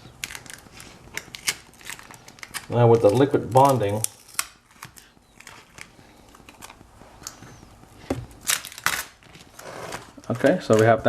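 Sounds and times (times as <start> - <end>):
plastic crinkling: 0.0 - 11.0.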